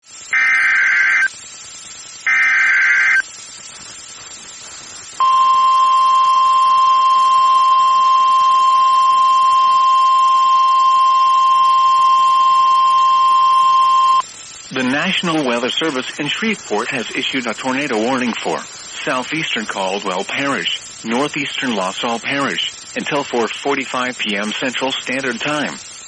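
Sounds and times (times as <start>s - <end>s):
screeching data burst: 0.2s - 1.4s, 2.2s - 3.4s, 5.2s - 25.9s
steady alarm tone: 0.3s - 1.3s, 2.2s - 3.2s, 5.2s - 20.2s.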